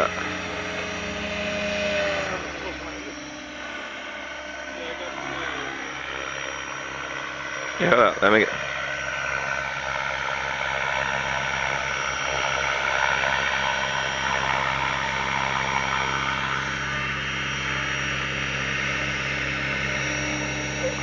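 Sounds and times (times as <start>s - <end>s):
model helicopters whining: 0.0s - 21.0s.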